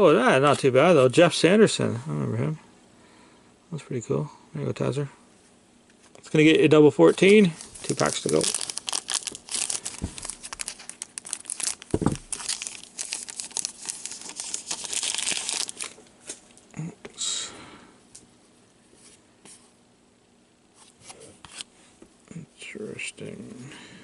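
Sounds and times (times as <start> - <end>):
card pack wrapper crinkling: 7.1 - 16.6.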